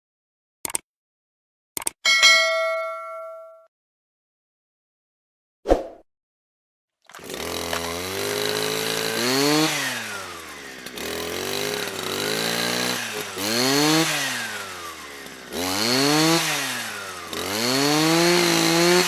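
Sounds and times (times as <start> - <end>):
brushcutter engine revving: 7.1 - 19.0.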